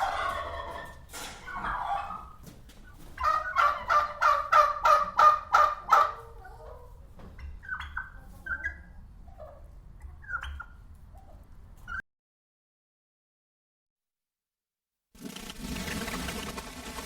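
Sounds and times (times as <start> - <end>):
turkey gobbling: 0.0 - 12.0.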